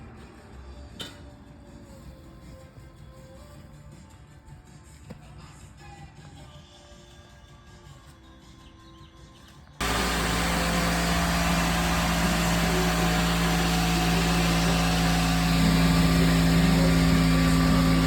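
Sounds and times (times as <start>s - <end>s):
small engine running: 9.8s - 18.0s.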